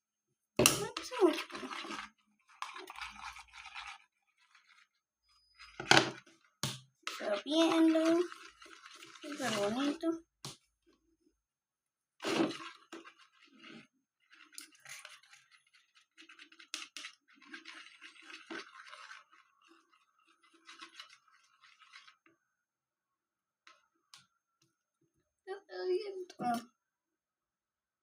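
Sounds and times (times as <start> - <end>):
utensil scraping and clicking: 12.2 - 22.2.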